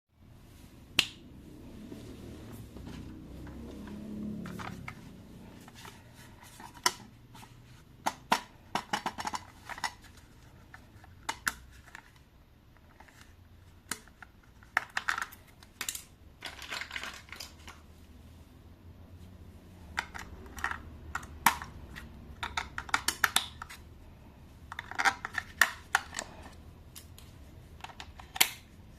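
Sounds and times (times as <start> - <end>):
plastic packaging clicks and crinkles: 13.9 - 17.8.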